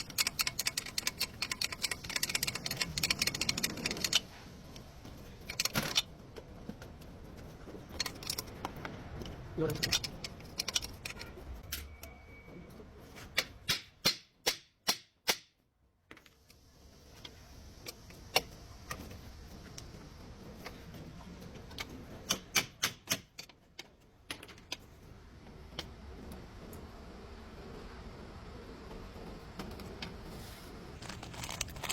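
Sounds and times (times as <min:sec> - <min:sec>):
hand tools clicking on metal: 0:00.0 - 0:04.2, 0:09.7 - 0:11.3.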